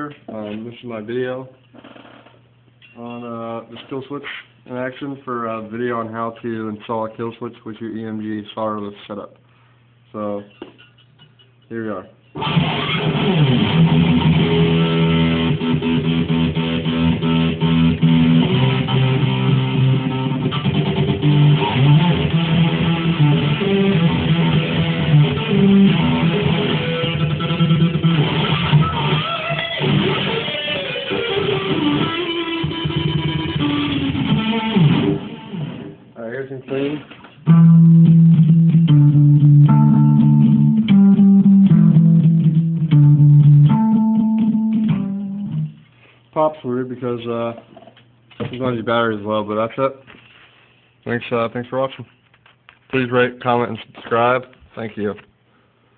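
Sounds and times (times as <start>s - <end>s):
stuttering electric guitar notes: 12.4s - 36.0s, 36.8s - 45.8s.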